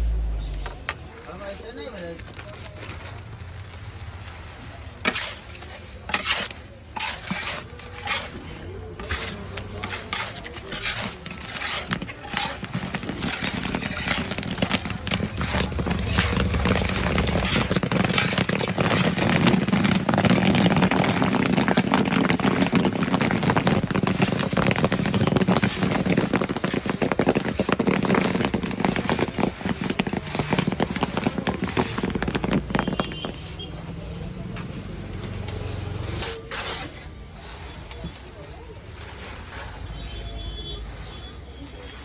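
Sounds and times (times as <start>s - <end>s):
popcorn popping: 0.1s - 35.7s.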